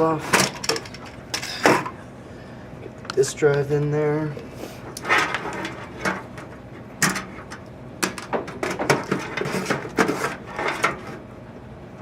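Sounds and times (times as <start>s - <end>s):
metal and plastic knocks and scrapes: 5.0s - 11.2s.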